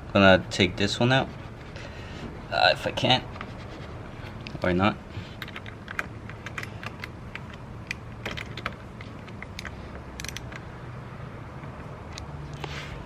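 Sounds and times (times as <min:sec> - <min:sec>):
metal clinking on battery terminal: 0:05.4 - 0:10.6
socket wrench clicking: 0:05.4 - 0:10.6.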